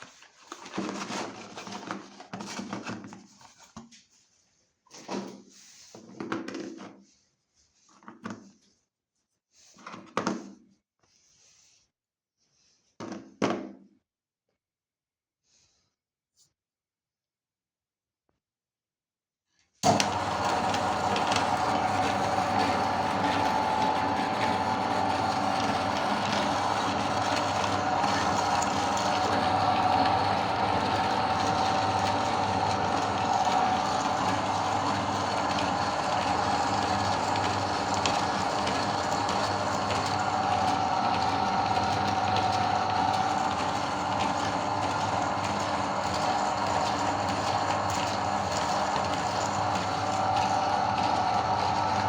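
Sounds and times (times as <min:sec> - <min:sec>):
cookies grinding rattle: 0:19.8 - 0:52.0
meat grinder motor humming: 0:19.8 - 0:52.0.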